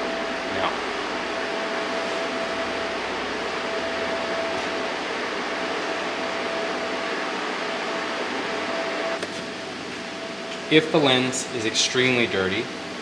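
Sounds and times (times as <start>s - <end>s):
fan-like whirring: 0.0s - 13.0s
thin constant whine: 0.0s - 13.0s.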